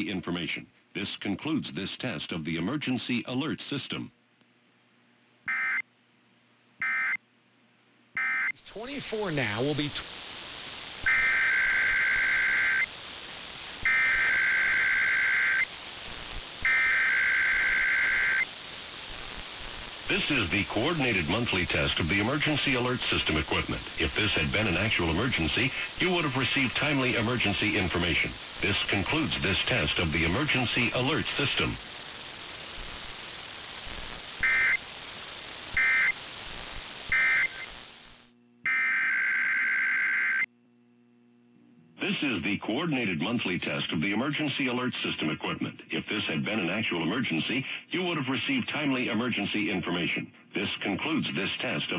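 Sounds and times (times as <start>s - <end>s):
broadcast hiss: 0.0s - 51.9s
two-tone digital data bursts: 5.5s - 5.8s, 8.2s - 8.5s, 11.0s - 12.9s, 13.8s - 15.7s, 16.6s - 18.5s, 34.4s - 34.9s, 35.7s - 36.3s, 37.0s - 37.9s, 38.7s - 40.5s
radio static: 8.2s - 40.5s, 41.8s - 51.9s.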